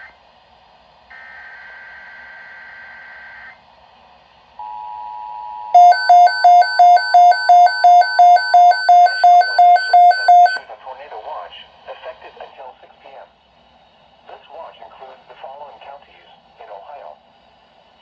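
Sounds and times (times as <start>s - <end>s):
data burst of high tones: 5.8s - 10.6s
rapid alarm beeping: 5.8s - 10.6s
two-tone attention signal: 5.8s - 10.6s.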